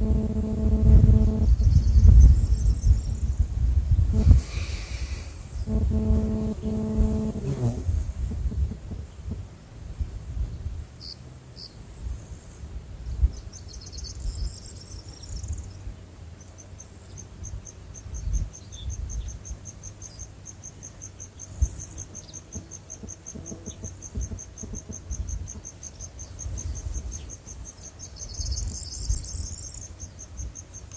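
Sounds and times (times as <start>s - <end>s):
insect trills: 0.0s - 9.1s, 16.4s - 30.9s
insects chirping: 0.0s - 9.1s, 13.3s - 30.9s.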